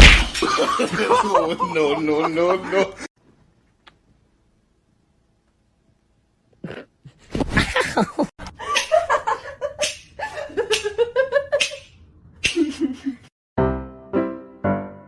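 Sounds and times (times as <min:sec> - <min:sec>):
person laughing hard: 0:07.5 - 0:11.6.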